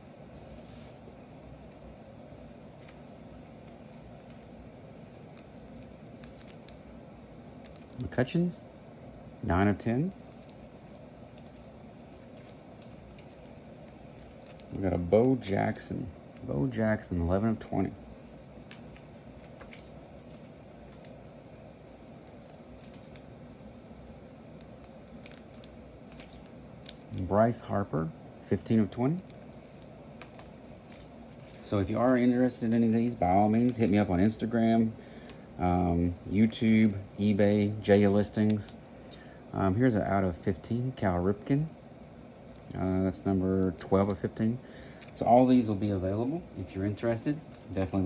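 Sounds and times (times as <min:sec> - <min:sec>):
low room hum: 0:00.0 - 0:48.0
trading cards clicking and scraping: 0:02.7 - 0:06.8, 0:10.2 - 0:16.1, 0:18.6 - 0:23.3, 0:29.1 - 0:34.5, 0:47.4 - 0:48.0.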